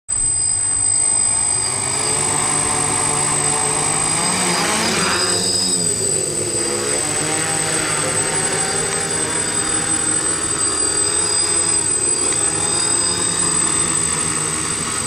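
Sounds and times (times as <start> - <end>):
drone motors and propellers whirring: 0.1 - 15.0.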